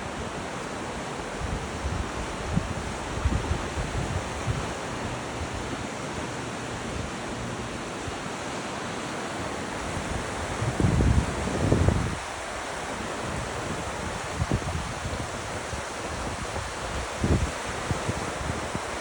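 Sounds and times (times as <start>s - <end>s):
river water rushing: 0.0s - 19.0s
wind thumps on microphone: 9.9s - 12.3s.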